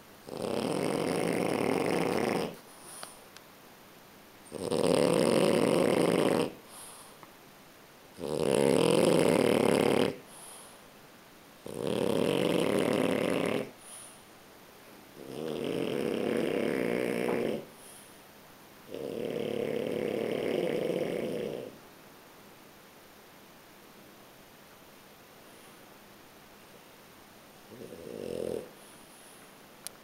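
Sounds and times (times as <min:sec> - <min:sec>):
dog snoring: 0:00.2 - 0:03.2, 0:04.4 - 0:07.2, 0:08.1 - 0:10.8, 0:11.6 - 0:14.2, 0:15.2 - 0:18.0, 0:18.9 - 0:21.8, 0:27.7 - 0:29.4.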